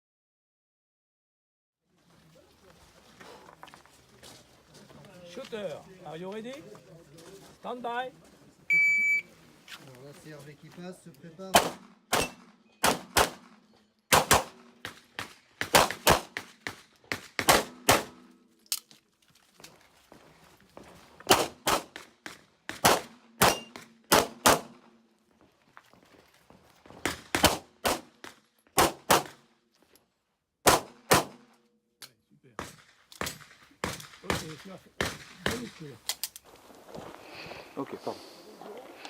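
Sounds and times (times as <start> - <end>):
handgun shots: 11.5 - 13.5, 14.1 - 18.3, 21.3 - 24.8, 27.1 - 29.4, 30.6 - 31.5.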